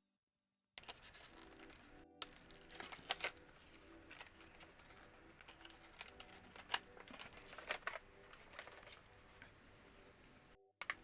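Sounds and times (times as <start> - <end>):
plastic packaging crinkling: 0.8 - 9.1.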